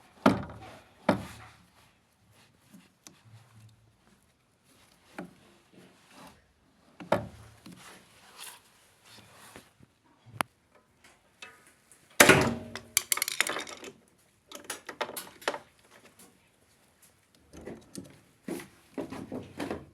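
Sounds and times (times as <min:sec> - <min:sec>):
hard objects knocking and clicking: 0:12.2 - 0:15.6
rattling clicks: 0:12.4 - 0:13.9.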